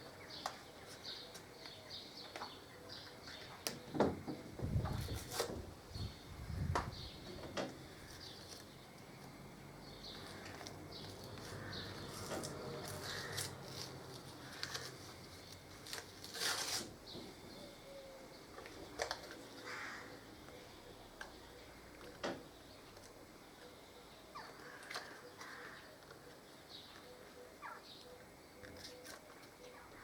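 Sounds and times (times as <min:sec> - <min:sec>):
plastic packaging rustling and clicking: 0:10.2 - 0:17.0.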